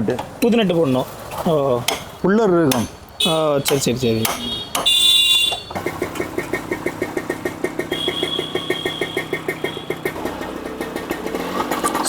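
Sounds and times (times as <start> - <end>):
small engine running: 5.8 - 12.0.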